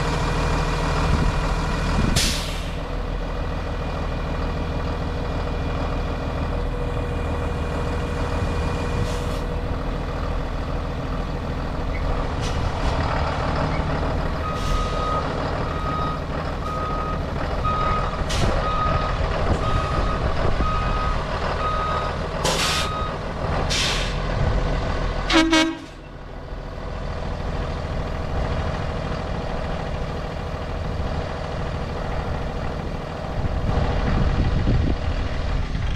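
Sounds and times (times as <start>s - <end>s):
diesel bus engine idling: 0.0s - 35.9s
air brakes hissing: 2.2s - 2.8s, 9.0s - 9.6s, 14.4s - 15.1s, 18.3s - 18.6s, 22.4s - 23.1s, 23.7s - 24.3s.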